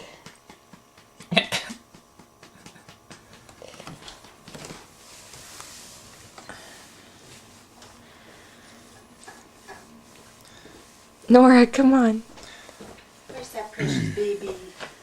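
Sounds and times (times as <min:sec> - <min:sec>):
grunt-like vocal sound: 0:13.8 - 0:14.2.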